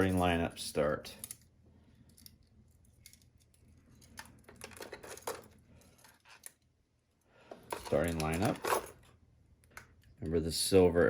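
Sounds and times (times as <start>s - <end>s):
fishing gear clicking and clinking: 2.1s - 6.6s, 7.6s - 9.1s.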